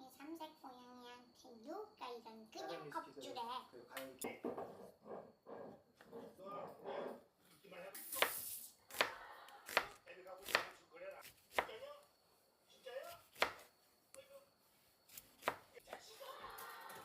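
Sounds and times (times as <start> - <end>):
knife chopping on cutting board: 8.2 - 11.8, 13.4 - 13.7, 15.1 - 16.0.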